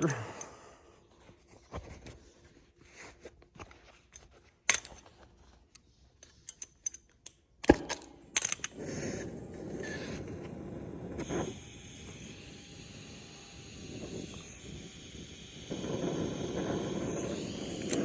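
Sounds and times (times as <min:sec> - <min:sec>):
cutting torch hissing: 0:08.8 - 0:18.0.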